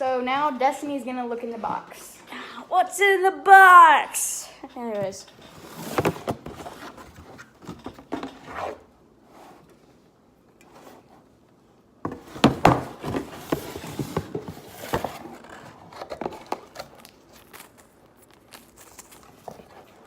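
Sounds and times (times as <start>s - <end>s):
boxes knocking and rustling: 4.8s - 8.5s, 12.0s - 17.3s.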